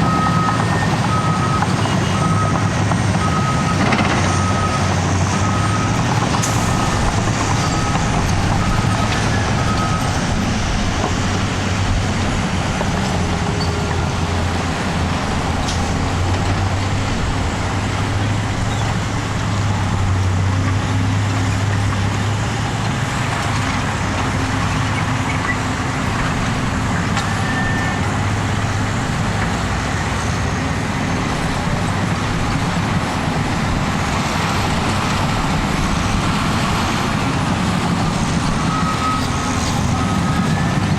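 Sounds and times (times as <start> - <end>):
reversing alarm beeping: 0.0 - 11.9, 37.8 - 40.9
bulldozer diesel engine running: 0.0 - 40.9.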